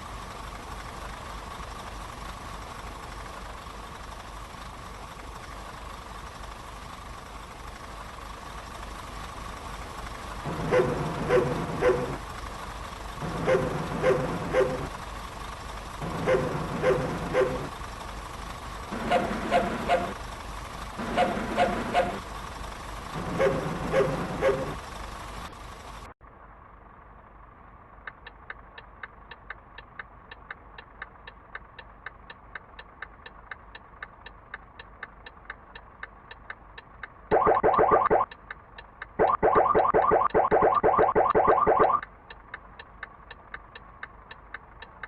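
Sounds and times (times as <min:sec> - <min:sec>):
faint steady ticking: 0:27.0 - 0:45.0.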